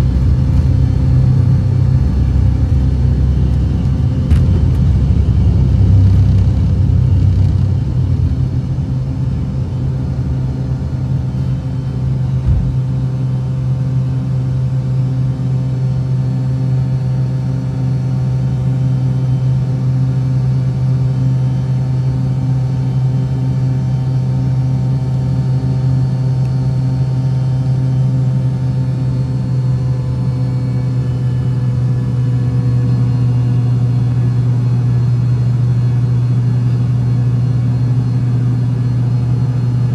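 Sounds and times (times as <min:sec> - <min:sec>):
low rumble: 0:00.0 - 0:11.3, 0:12.0 - 0:13.1
engine droning: 0:00.0 - 0:13.2.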